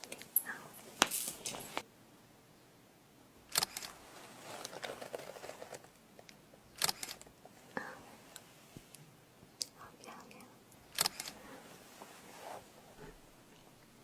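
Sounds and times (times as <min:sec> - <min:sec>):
crackly rustling: 0:03.5 - 0:09.0.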